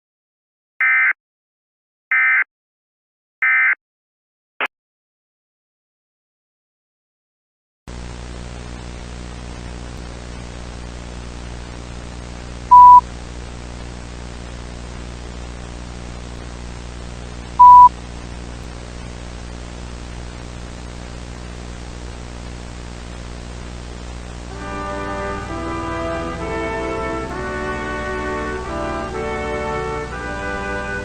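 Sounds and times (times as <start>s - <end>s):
broadcast static hiss: 7.9s - 31.0s
loud high beep: 12.7s - 13.0s, 17.6s - 17.9s.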